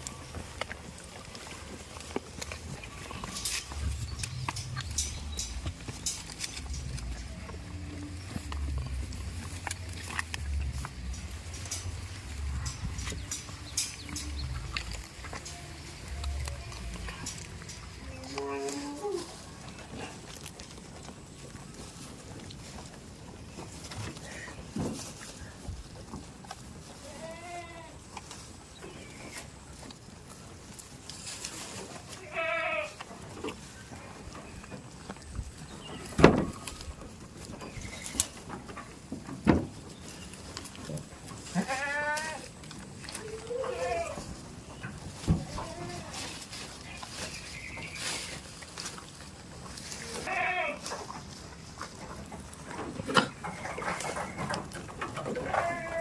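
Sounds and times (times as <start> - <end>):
rustling: 0.0 - 56.0
goat bleating: 2.6 - 9.1, 12.4 - 19.7, 26.9 - 28.1, 32.0 - 33.2, 40.8 - 44.4, 45.2 - 46.5, 49.8 - 51.2, 53.0 - 56.0.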